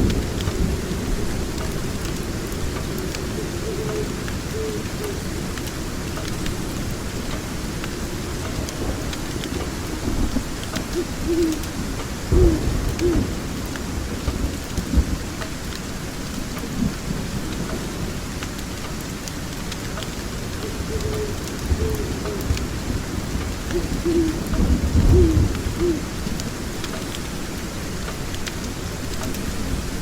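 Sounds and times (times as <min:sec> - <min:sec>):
steady rain: 0:00.0 - 0:30.0
thunder rolling: 0:08.6 - 0:15.3, 0:20.6 - 0:26.6.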